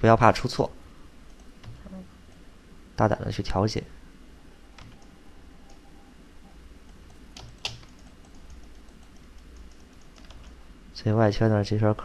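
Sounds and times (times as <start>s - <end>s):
computer keyboard keystrokes: 1.3s - 1.8s, 4.8s - 5.8s, 6.9s - 10.6s.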